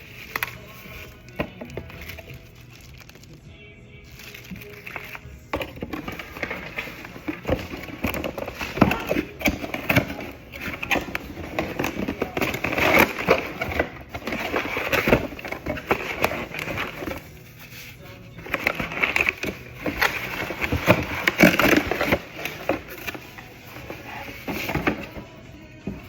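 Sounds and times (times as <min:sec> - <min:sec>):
packaging rustling and crinkling: 0:00.0 - 0:03.4, 0:04.1 - 0:26.0.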